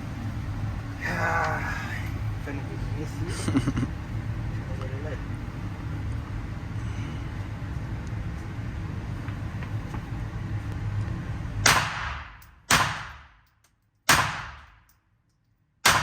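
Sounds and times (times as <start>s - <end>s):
low steady rumble: 0.0s - 16.0s
handgun shots with echo: 11.6s - 13.4s, 14.1s - 14.8s.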